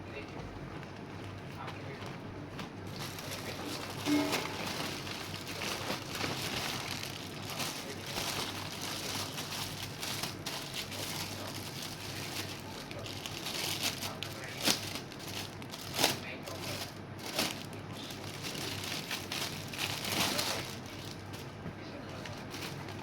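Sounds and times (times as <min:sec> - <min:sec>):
packaging crinkling and rustling: 0:00.8 - 0:23.0.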